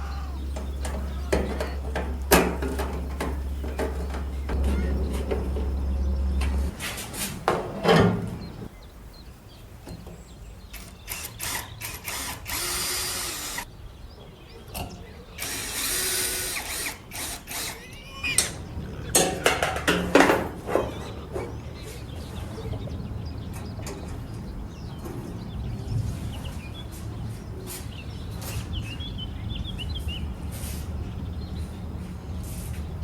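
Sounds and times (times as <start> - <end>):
noisy tool bursts: 10.7 - 13.7, 15.4 - 17.9.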